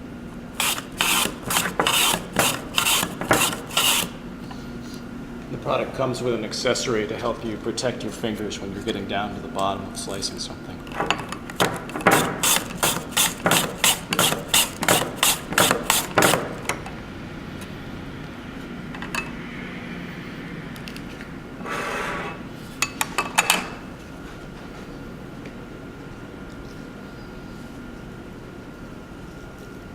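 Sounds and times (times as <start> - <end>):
potato slicing on mandoline: 0.6 - 4.2, 11.5 - 16.6
short scrape: 0.6 - 4.2, 12.1 - 16.4.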